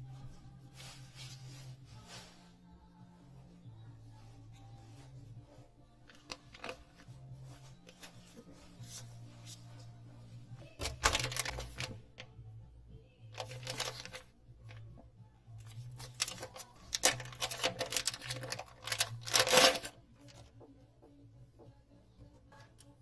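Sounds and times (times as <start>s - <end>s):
packaging rustling: 10.8s - 11.9s, 13.4s - 14.2s, 15.8s - 19.9s.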